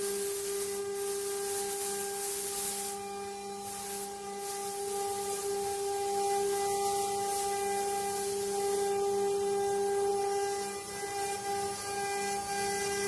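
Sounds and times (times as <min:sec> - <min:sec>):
router spindle whine: 0:03.0 - 0:13.0.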